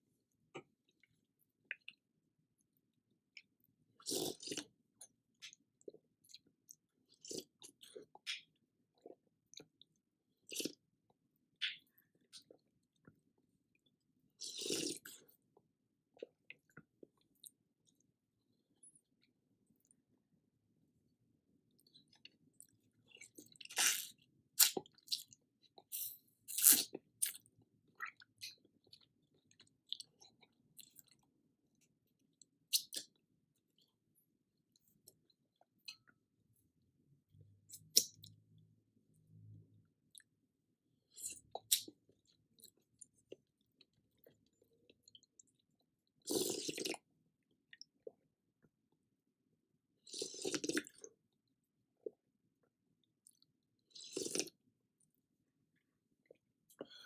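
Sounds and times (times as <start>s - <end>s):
chewing and wet mouth sounds: 0.5s - 20.0s, 21.7s - 34.0s, 37.7s - 38.5s, 40.1s - 40.4s, 41.1s - 48.7s, 50.0s - 51.4s, 52.0s - 55.2s, 55.8s - 57.0s.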